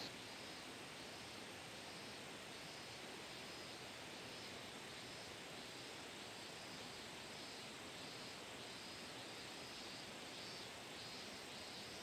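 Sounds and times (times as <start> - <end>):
insects chirping: 7.4 - 12.0.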